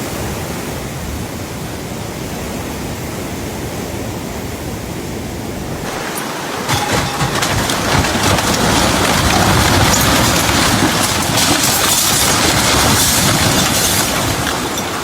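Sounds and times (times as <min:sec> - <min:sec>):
heavy rain pouring: 0:05.6 - 0:15.0.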